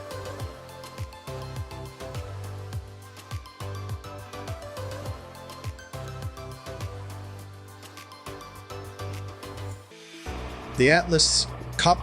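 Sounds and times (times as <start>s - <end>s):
music with bass and beat: 0.0s - 12.0s.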